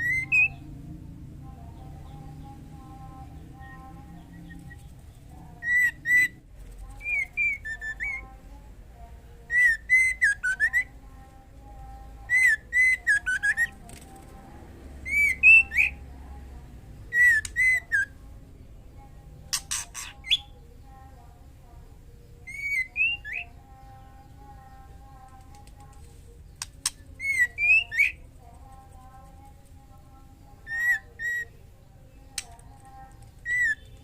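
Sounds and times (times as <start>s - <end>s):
bird whistled calls: 17.1s - 18.1s.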